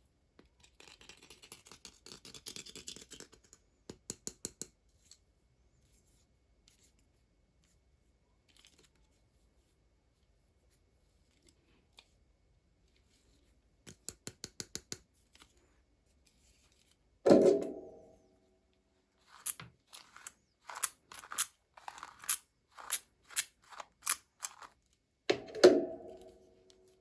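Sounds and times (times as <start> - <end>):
hollow knocks of objects set down: 17.3 - 18.0, 25.3 - 26.4.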